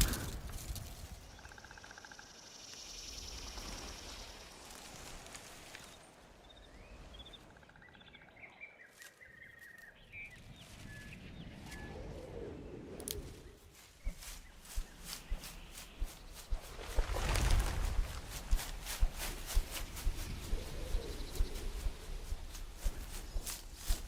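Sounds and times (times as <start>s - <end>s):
faint bird chirps: 0.0s - 17.5s.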